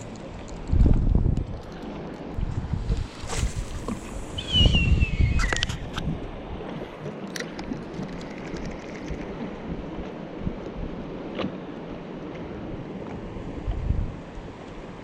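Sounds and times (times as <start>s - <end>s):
wind buffeting microphone: 0.0s - 11.3s, 12.4s - 15.0s
whistle-like squeal falling in pitch: 4.4s - 5.8s.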